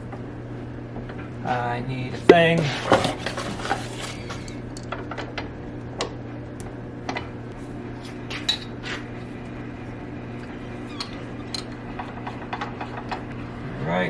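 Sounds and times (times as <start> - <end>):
steady low hum: 0.0 - 14.0
metal tools clinking: 10.9 - 13.2.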